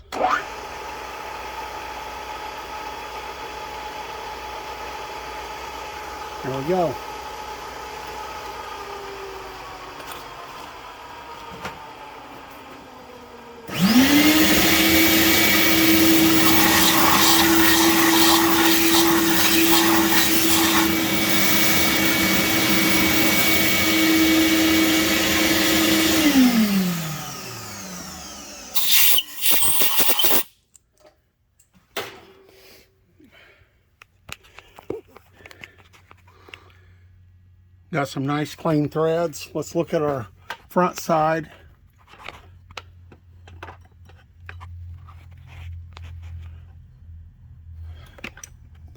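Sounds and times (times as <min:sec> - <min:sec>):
vacuum cleaner motor running: 0:00.1 - 0:30.5.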